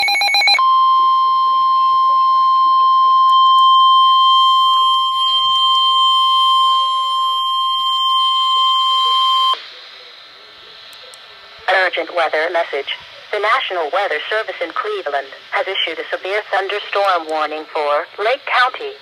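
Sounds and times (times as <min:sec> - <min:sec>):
steady high alarm tone: 0:00.0 - 0:09.6.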